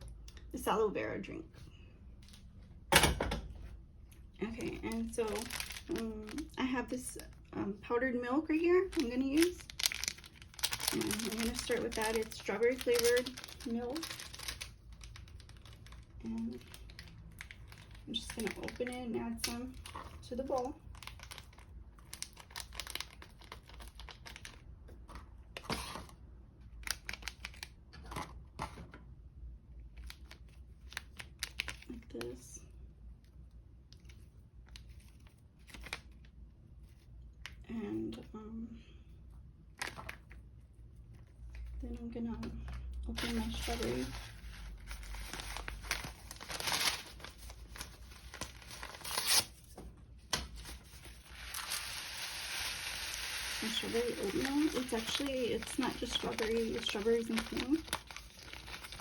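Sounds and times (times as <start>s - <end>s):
packaging crinkling: 4.6s - 7.5s, 8.5s - 24.8s, 26.7s - 27.8s, 29.9s - 31.9s, 43.1s - 49.8s, 50.5s - 59.0s
packaging rasp: 48.3s - 49.5s.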